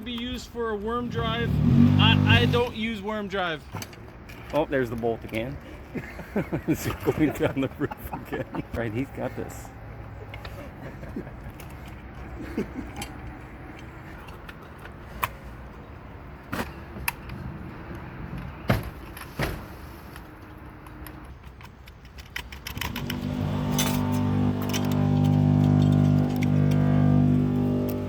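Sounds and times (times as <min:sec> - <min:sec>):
loud steady drone: 0:01.1 - 0:02.8, 0:22.9 - 0:28.0.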